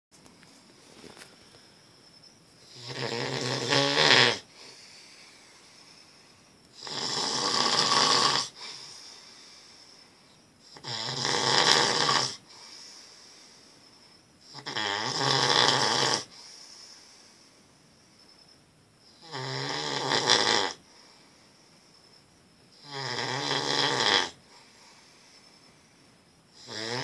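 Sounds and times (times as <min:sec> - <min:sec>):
man snoring loudly: 0:02.7 - 0:04.8, 0:06.8 - 0:09.0, 0:10.7 - 0:12.5, 0:14.5 - 0:16.4, 0:19.2 - 0:20.8, 0:22.8 - 0:24.4, 0:26.6 - 0:27.0.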